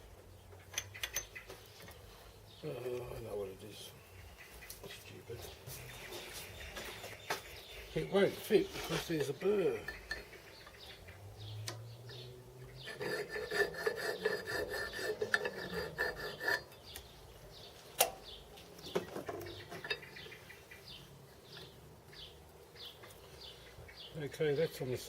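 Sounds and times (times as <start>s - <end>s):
file rasping on metal: 12.7s - 17.0s.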